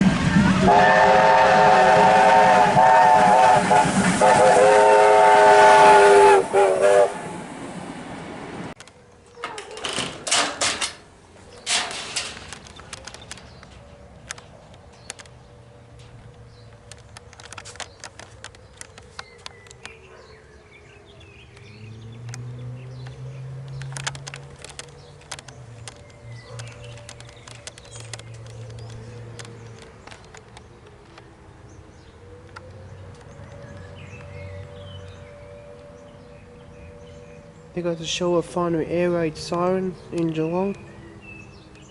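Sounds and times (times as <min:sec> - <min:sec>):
distant air raid siren wailing: 0:00.0 - 0:08.8, 0:12.6 - 0:41.8
sharp clicks: 0:11.6 - 0:15.4, 0:16.3 - 0:20.0, 0:21.5 - 0:31.3.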